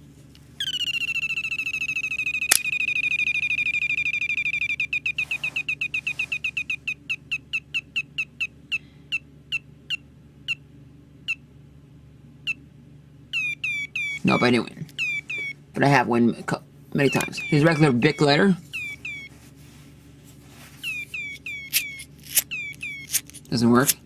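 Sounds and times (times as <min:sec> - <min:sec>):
falling electronic chirping beeps: 0:00.6 - 0:08.5, 0:13.3 - 0:15.6, 0:17.0 - 0:19.3, 0:20.8 - 0:23.2
sharp click: 0:02.5 - 0:02.8.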